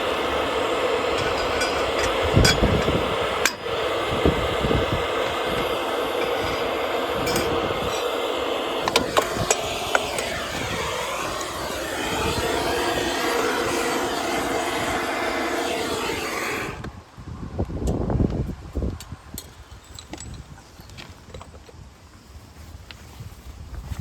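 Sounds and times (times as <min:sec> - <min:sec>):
steady rushing noise: 0:00.0 - 0:17.0.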